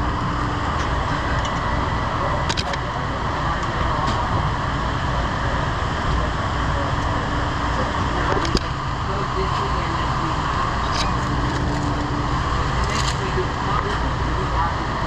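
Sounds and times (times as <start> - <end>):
steady mechanical running noise: 0.0 - 15.0.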